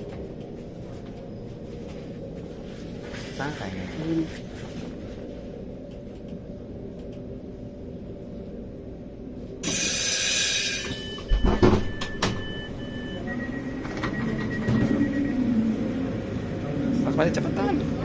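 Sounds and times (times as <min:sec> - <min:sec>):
train low rumble: 0:00.0 - 0:18.0
loud burst of air: 0:09.6 - 0:11.0
electronic door warning tones: 0:09.6 - 0:15.6.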